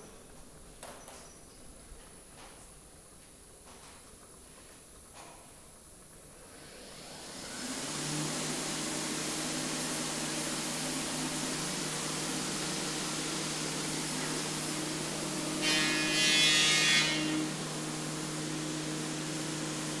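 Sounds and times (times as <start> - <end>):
air handling hiss and hum: 8.3 - 20.0.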